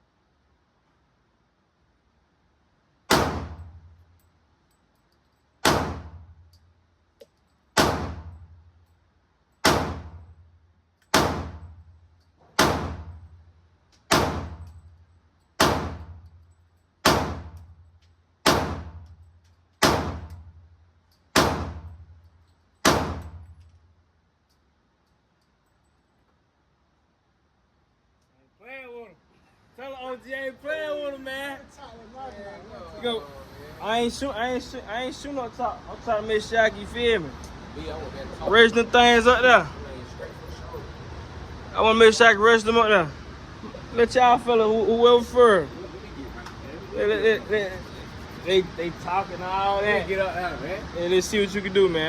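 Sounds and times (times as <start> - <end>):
pistol shots with echo: 3.1 - 3.7, 5.6 - 6.2, 7.8 - 8.4, 9.6 - 10.2, 11.1 - 11.7, 12.6 - 13.2, 14.1 - 14.6, 15.6 - 16.2, 17.0 - 17.6, 18.4 - 19.0, 19.8 - 20.3, 21.4 - 22.0, 22.8 - 23.4.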